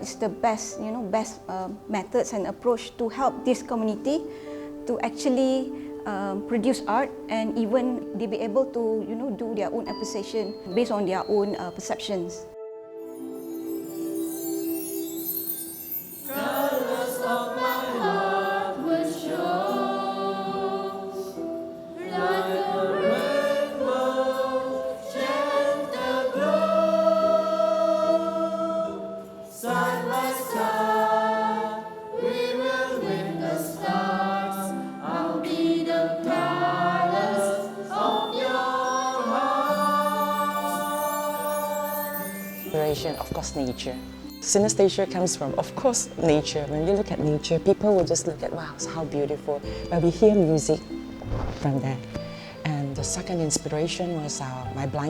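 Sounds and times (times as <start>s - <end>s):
choir singing: 13.4s - 43.8s.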